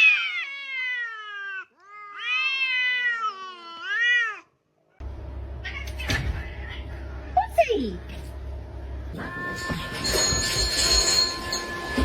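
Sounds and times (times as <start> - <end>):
cat meowing: 0.0 - 5.0, 5.6 - 7.0
low steady hum: 5.0 - 12.0.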